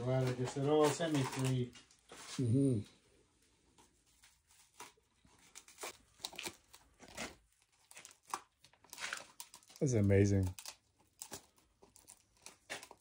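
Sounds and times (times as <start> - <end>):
crinkling rustles: 0.0 - 2.5, 3.4 - 13.0.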